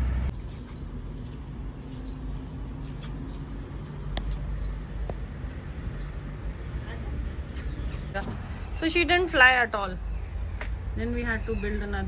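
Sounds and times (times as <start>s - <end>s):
steady low hum: 0.0s - 12.0s
bird chirping: 0.5s - 3.8s, 4.5s - 5.0s, 5.9s - 6.5s, 7.5s - 12.0s.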